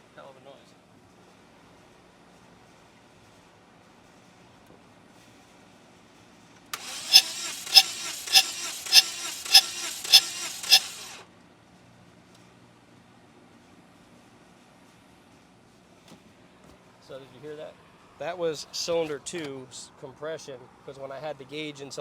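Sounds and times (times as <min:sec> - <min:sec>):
engine cranking on starter: 0:06.8 - 0:11.2
sharp puffs of air: 0:06.8 - 0:11.2.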